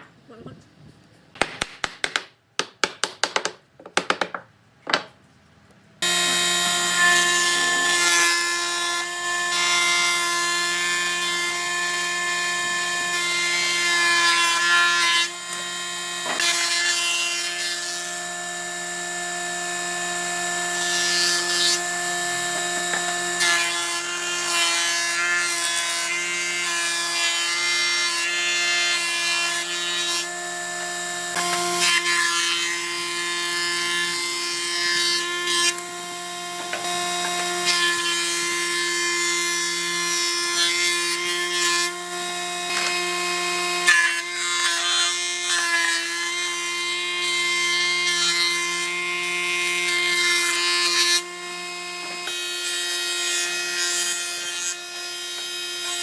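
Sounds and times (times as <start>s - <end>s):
wooden knocks: 1.4s - 5.2s
power tool running on wood: 6.0s - 10.1s, 21.8s - 23.4s.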